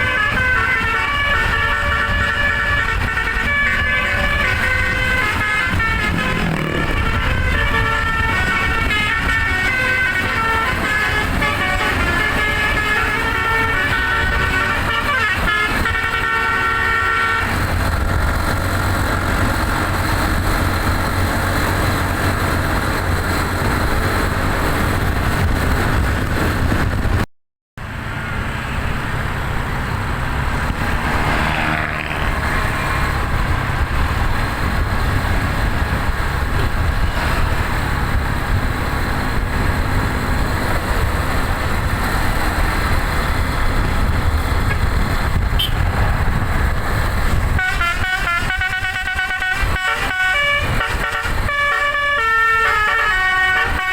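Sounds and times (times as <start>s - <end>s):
musical bus horn: 0.0s - 18.1s, 44.6s - 45.9s, 47.4s - 53.9s
vehicle engine and road rumble: 0.0s - 53.9s.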